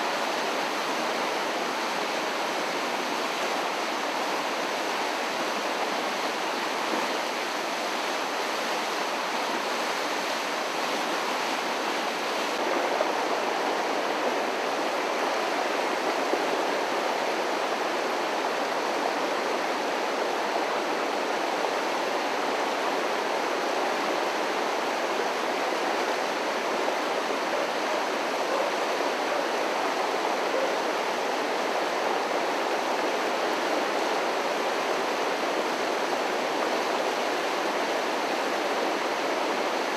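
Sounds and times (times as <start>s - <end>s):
creek rushing: 0.0s - 39.9s.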